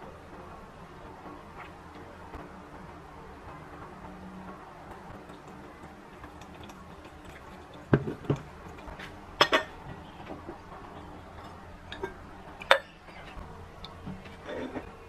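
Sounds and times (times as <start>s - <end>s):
dishes and cups clinking: 7.2s - 10.5s, 11.4s - 13.4s, 14.1s - 14.9s.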